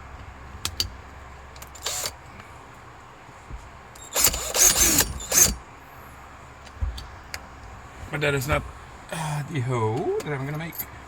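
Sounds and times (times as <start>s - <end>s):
power drill drilling plastic: 1.8s - 2.2s, 4.0s - 5.6s.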